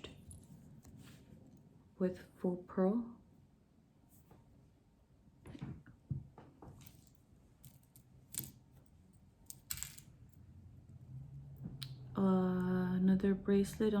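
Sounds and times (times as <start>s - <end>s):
jewelry clicking and clinking: 6.7s - 10.4s.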